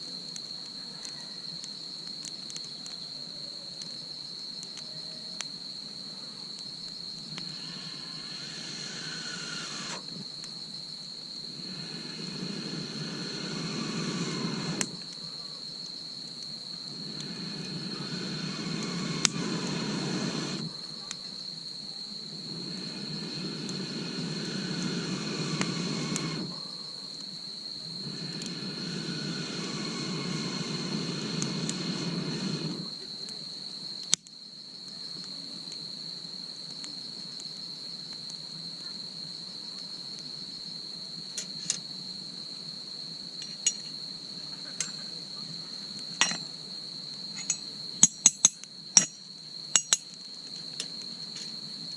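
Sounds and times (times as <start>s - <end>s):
insects chirring: 0.0s - 51.9s
sharp clicks: 22.7s - 26.6s.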